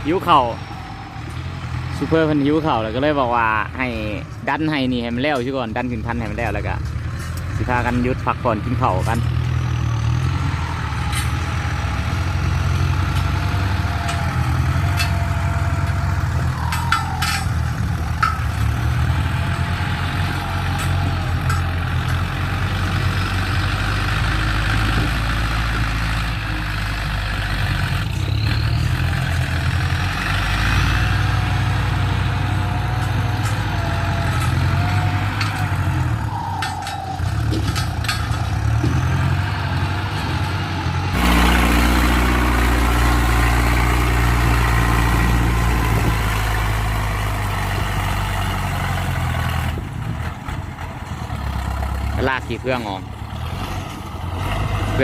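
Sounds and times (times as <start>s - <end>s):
tractor diesel engine running: 0.0s - 55.0s
clicks and clanks: 6.2s - 7.6s, 11.0s - 11.5s, 12.8s - 22.4s, 31.3s - 39.4s.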